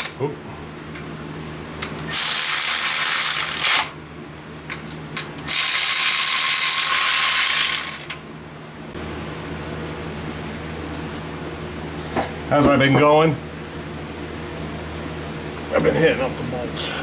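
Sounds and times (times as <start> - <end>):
power ratchet running: 2.1 - 4.0, 5.5 - 8.2.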